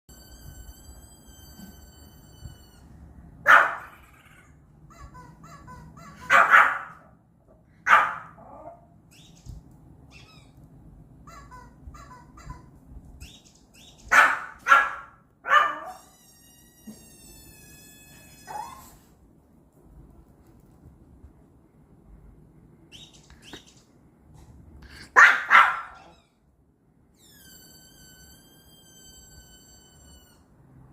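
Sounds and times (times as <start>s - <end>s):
small dog barking: 3.4s - 4.2s, 6.0s - 7.2s, 7.8s - 8.8s, 14.0s - 16.0s, 25.1s - 26.2s
chirping electronic sounds from tv: 22.9s - 23.9s.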